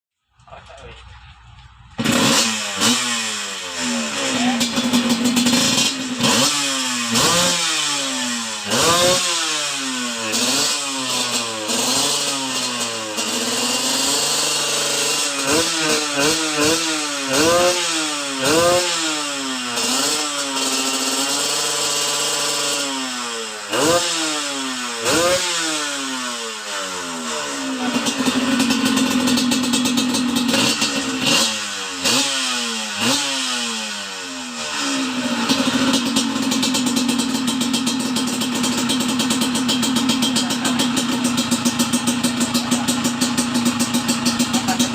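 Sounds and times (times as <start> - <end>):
dirt bike engine revving: 1.9 - 44.9.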